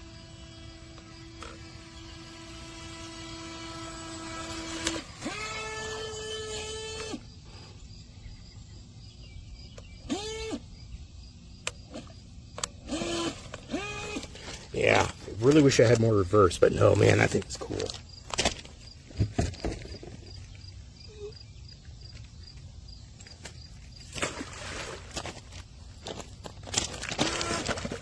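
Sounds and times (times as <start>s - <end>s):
electric motor whining: 0.0s - 7.3s, 10.0s - 10.7s, 11.8s - 18.0s, 26.8s - 28.0s.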